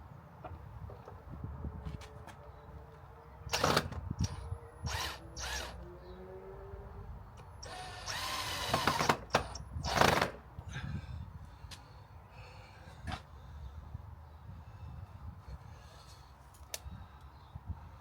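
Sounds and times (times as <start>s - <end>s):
power drill bursts: 3.5s - 5.8s, 7.6s - 10.4s.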